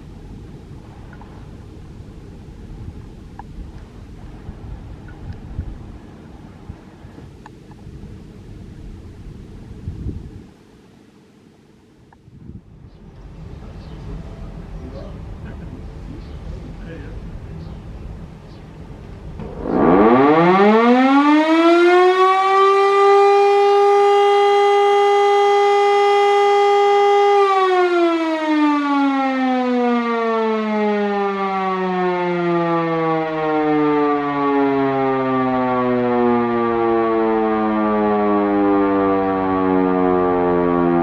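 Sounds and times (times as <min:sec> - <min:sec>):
factory siren howling: 0:13.2 - 0:41.0.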